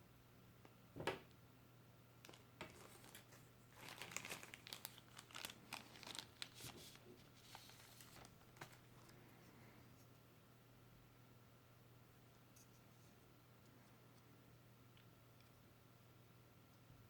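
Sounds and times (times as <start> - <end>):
packaging crinkling and rustling: 2.2 - 9.2.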